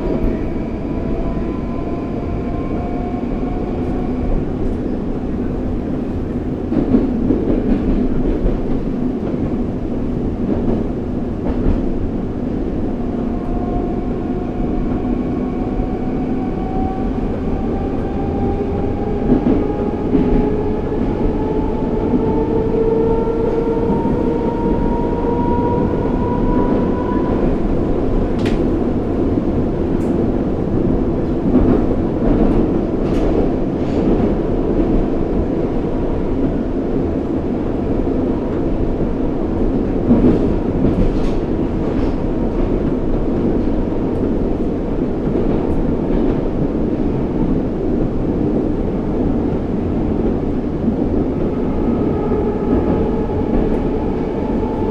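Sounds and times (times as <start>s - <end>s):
train running rumble: 0.0s - 54.9s
train traction drive whine: 38.8s - 54.9s.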